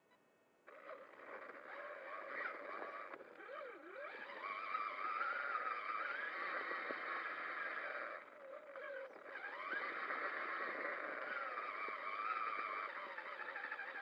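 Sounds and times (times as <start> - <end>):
electric motor whining: 0.7 - 14.0.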